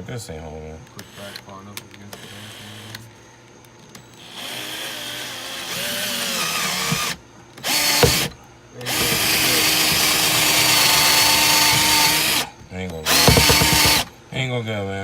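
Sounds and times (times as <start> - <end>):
power drill driving screw: 0.9 - 3.1, 3.9 - 14.2
sharp knock: 7.7 - 12.3, 13.1 - 14.1.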